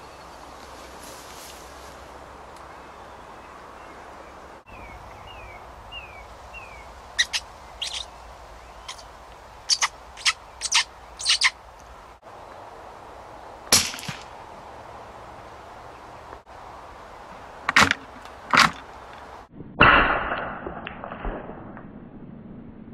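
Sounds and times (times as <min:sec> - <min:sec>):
bird sharp chirps: 0:04.7 - 0:09.1, 0:09.7 - 0:11.6
rifle shot: 0:19.8 - 0:21.8.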